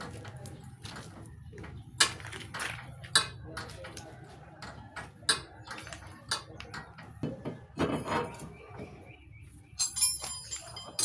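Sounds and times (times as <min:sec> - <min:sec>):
metal tools clinking: 0:09.8 - 0:11.0.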